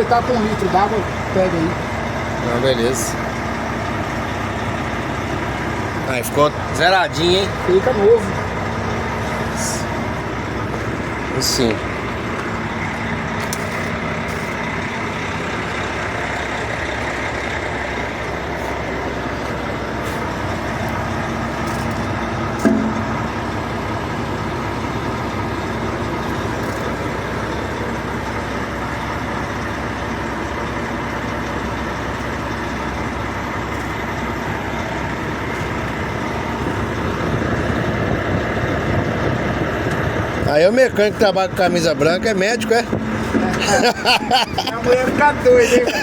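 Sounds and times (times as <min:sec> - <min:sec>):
vehicle engine running: 0:00.0 - 0:46.0
short knock: 0:22.6 - 0:23.2.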